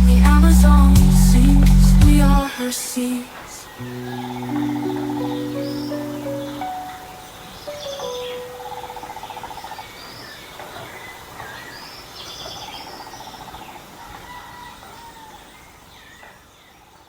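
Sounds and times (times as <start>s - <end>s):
steady background hiss: 0.0s - 17.0s
bird trills: 3.8s - 10.4s.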